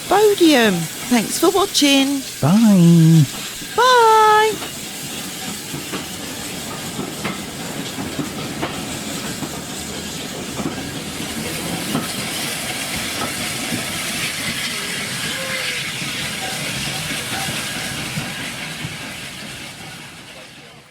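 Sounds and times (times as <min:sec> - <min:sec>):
steam train hissing: 0:04.6 - 0:20.9.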